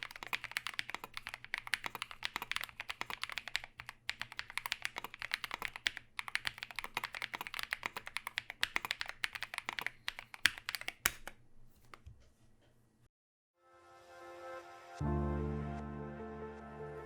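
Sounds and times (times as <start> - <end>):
typing on a keyboard: 0.0 - 12.0.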